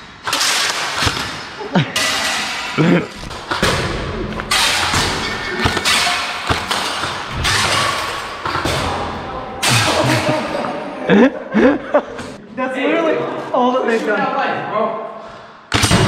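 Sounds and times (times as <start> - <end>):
knocks and thuds: 2.9 - 9.0.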